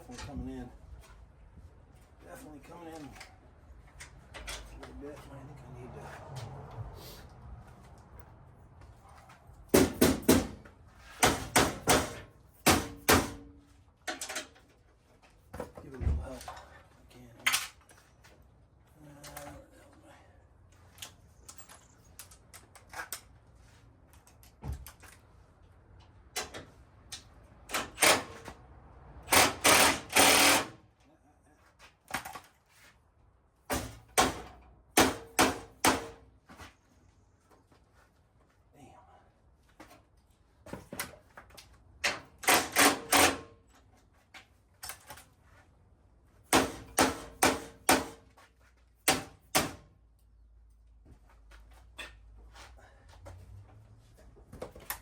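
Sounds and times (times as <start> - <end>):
hand tools clicking and knocking: 9.7 - 13.4, 29.2 - 30.7, 33.7 - 36.2, 40.8 - 43.5, 46.5 - 48.2.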